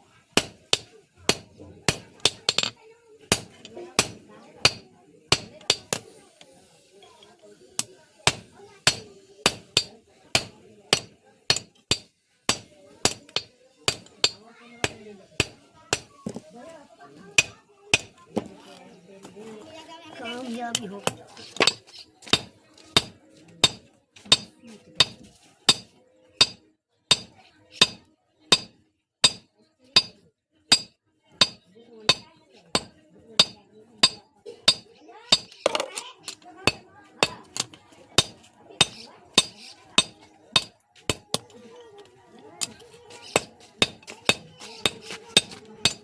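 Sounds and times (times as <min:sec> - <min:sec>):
hammer striking steel on anvil: 0:00.4 - 0:02.7, 0:03.3 - 0:06.0, 0:08.2 - 0:16.1, 0:17.4 - 0:18.1, 0:21.6 - 0:35.6, 0:36.2 - 0:41.5, 0:42.6 - 0:46.0.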